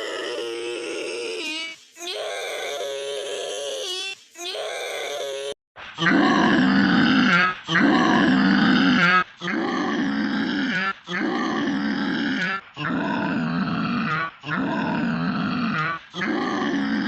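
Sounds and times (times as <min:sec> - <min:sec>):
deep distorted growling voice: 0:06.0 - 0:17.0.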